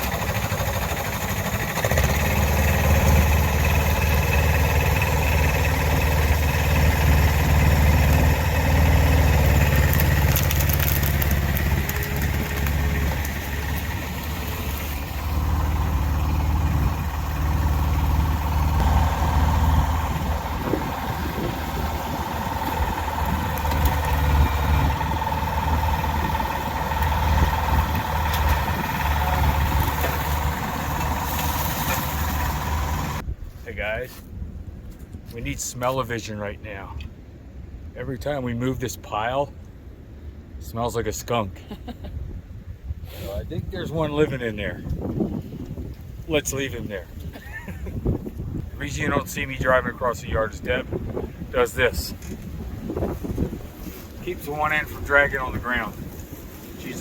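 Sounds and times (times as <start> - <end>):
tractor diesel engine running: 0.0 - 33.2, 47.9 - 57.0.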